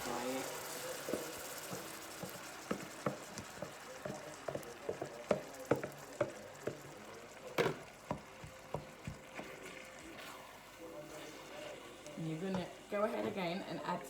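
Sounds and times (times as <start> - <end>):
courgette sizzling in a pan: 0.0 - 14.0
utensil knocking against pan: 1.1 - 6.8.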